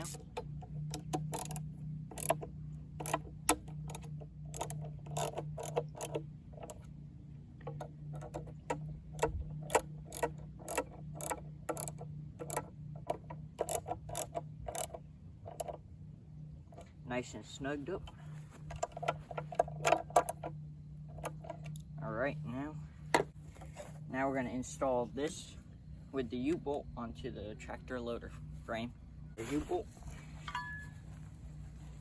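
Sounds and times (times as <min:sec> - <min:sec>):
socket ratchet clicking: 0:00.0 - 0:06.9, 0:07.6 - 0:15.8.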